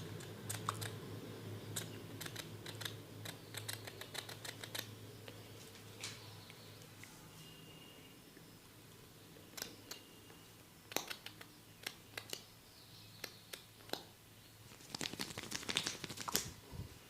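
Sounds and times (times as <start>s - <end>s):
hands clicking on skin and hair: 1.8s - 4.9s, 10.9s - 12.5s, 14.7s - 16.5s.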